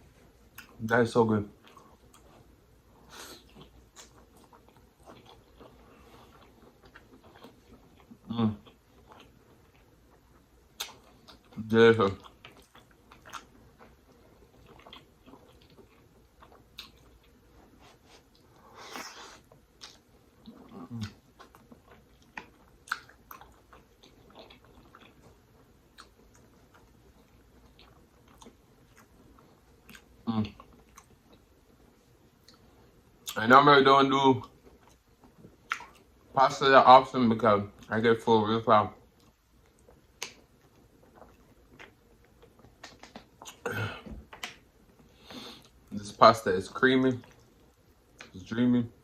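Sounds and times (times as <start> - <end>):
person chewing: 1.6 - 31.5, 34.4 - 36.2, 39.1 - 45.9, 47.2 - 48.4
lip smacks: 18.2 - 25.2, 39.2 - 45.9
wet mouth clicks and smacks: 22.2 - 23.2, 41.1 - 43.6.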